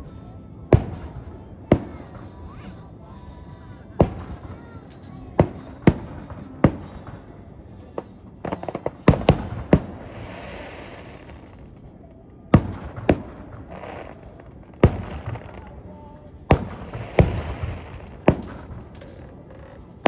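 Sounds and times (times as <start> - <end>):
firework crackling hiss: 0.0 - 20.0
fireworks bangs: 0.7 - 20.0
small firework pops: 12.5 - 15.7, 16.5 - 20.0.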